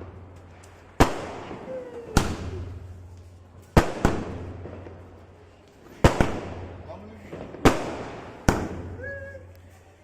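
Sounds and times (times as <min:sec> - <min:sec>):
firecracker bangs with echo: 0:00.0 - 0:03.1, 0:03.7 - 0:05.1, 0:06.0 - 0:09.0.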